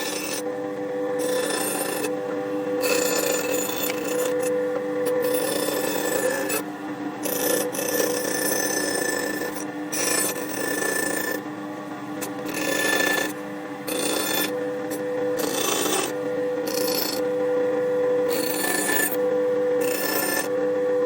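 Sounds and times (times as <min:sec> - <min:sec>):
rasping scrape on wood: 0:01.2 - 0:02.2, 0:02.8 - 0:06.6, 0:07.2 - 0:11.4, 0:12.2 - 0:17.3, 0:18.3 - 0:19.2, 0:19.8 - 0:20.5.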